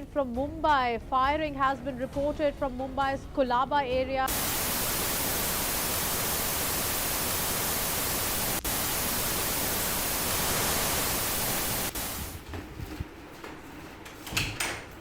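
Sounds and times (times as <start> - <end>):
television static hiss: 4.3 - 12.4.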